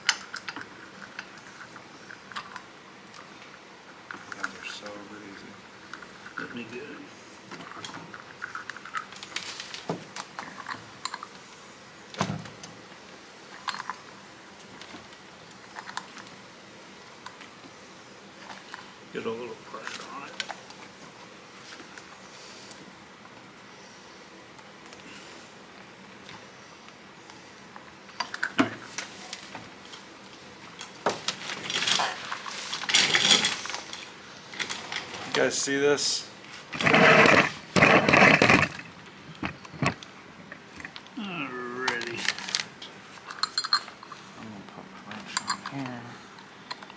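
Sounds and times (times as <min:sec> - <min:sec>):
metal tools clinking: 0:04.1 - 0:05.5, 0:31.4 - 0:35.5, 0:36.7 - 0:40.0, 0:43.2 - 0:44.3, 0:45.2 - 0:45.9
metal scraping: 0:36.7 - 0:40.0.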